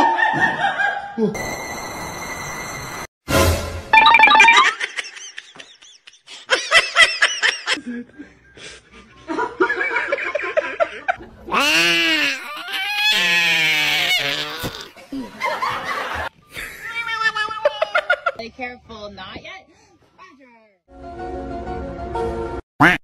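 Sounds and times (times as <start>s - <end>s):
people laughing: 4.6s - 11.4s, 15.0s - 18.4s.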